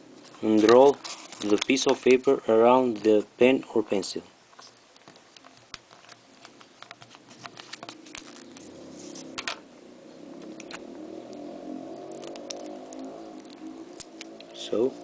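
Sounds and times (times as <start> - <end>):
low steady hum: 0.0 - 15.0
paper crinkling and rustling: 0.3 - 2.1, 4.6 - 9.6.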